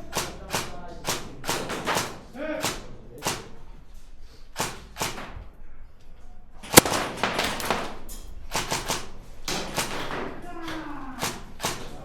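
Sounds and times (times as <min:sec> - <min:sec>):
airsoft gunfire cracks: 0:06.7 - 0:08.0.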